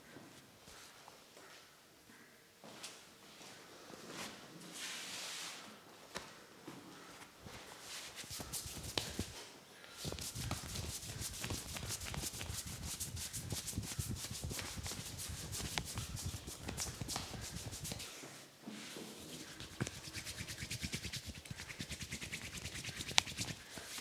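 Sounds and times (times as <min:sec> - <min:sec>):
hands rubbing head: 0:07.8 - 0:09.4, 0:10.0 - 0:18.3, 0:18.9 - 0:24.0
hands slapping on head: 0:08.1 - 0:09.4, 0:10.0 - 0:18.1, 0:19.4 - 0:24.0.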